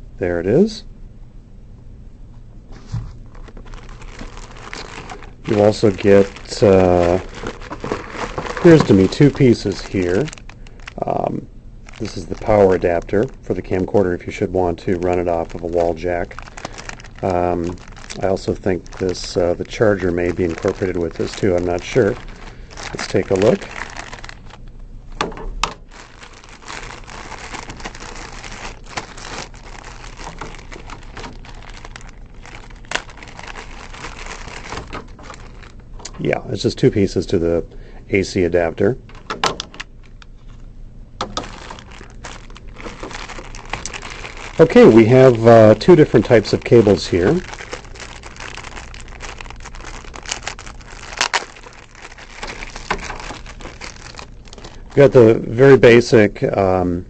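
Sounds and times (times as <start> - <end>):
plastic packaging crinkling: 2.8 - 37.4, 38.6 - 56.0.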